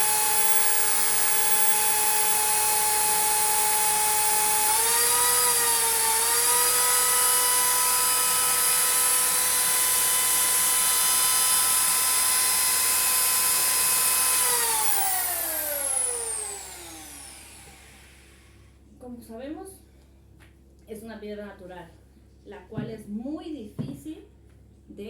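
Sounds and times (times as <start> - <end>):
electric drill boring into stone: 0.0 - 18.6
drill motor spinning down: 0.0 - 18.7.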